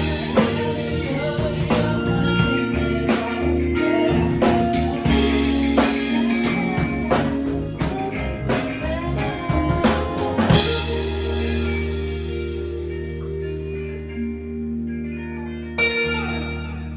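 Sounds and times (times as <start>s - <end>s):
band music with drums and guitar: 0.0s - 14.3s
held guitar chord ringing: 10.6s - 16.9s.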